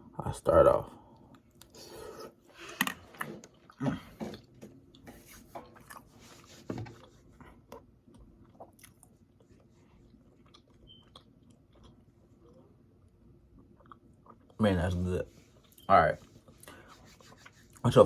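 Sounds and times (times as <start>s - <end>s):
man chewing with wet mouth smacks: 5.6s - 6.1s, 7.0s - 14.6s.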